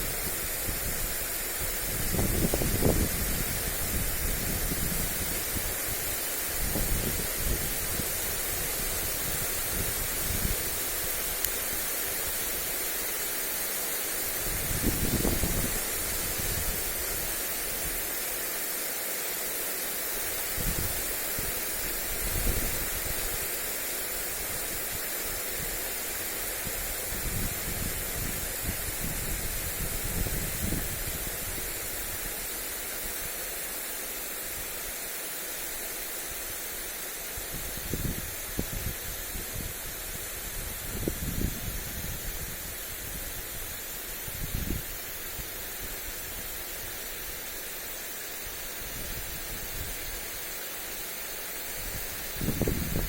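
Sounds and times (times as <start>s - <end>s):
sprinkler spraying water: 0.0s - 53.0s
wind buffeting microphone: 0.5s - 6.0s, 6.6s - 11.4s, 14.4s - 17.3s, 37.5s - 45.4s, 51.8s - 53.0s.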